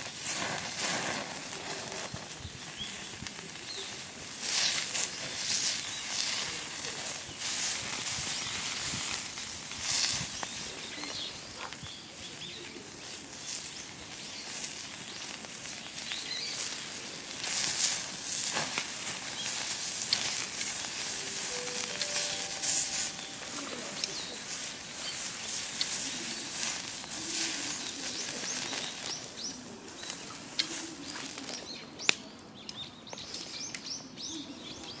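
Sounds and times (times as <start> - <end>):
wood fire crackling and sizzling: 0.0 - 35.0
faint bird chirps: 19.3 - 26.6.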